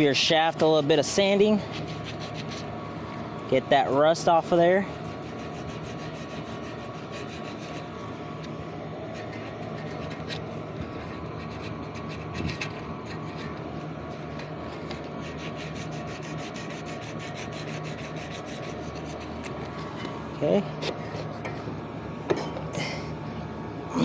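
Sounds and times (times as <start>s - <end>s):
sandpaper scraping steel shaft: 1.2s - 2.7s, 4.2s - 7.9s, 9.1s - 20.0s.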